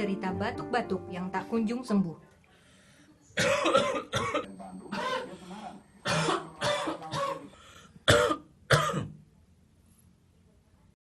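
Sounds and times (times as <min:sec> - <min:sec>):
man coughing: 0:03.4 - 0:05.4, 0:06.0 - 0:09.2.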